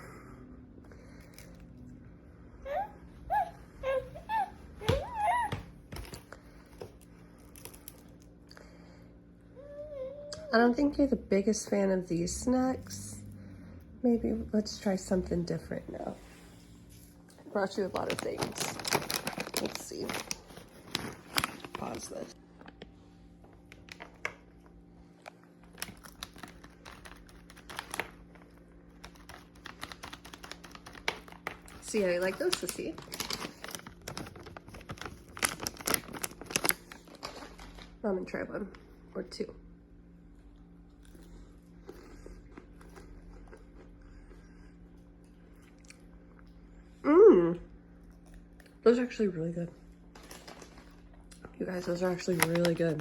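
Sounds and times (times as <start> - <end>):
snack packaging crinkling: 6.0 - 8.4, 17.5 - 38.0, 50.1 - 53.0.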